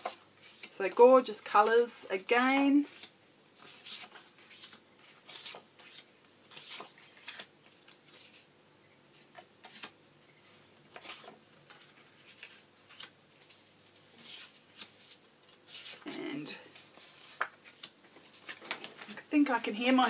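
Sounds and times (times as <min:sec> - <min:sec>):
paper rustling: 0:10.9 - 0:20.0.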